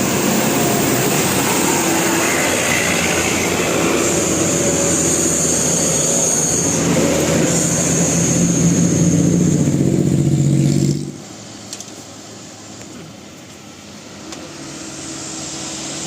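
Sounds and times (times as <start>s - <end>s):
bus engine revving: 0.0s - 11.4s.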